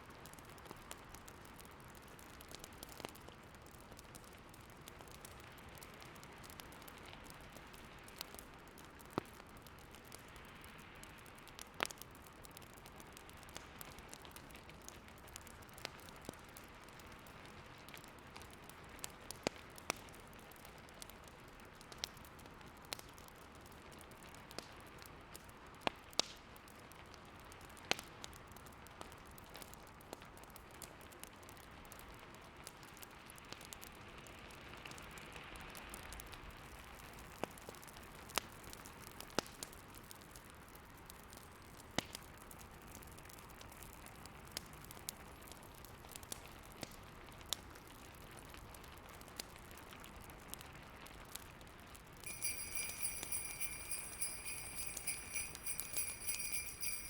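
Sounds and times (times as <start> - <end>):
wood fire crackling and popping: 0.2 - 33.8, 52.2 - 57.0
soft steady hiss: 52.3 - 57.0.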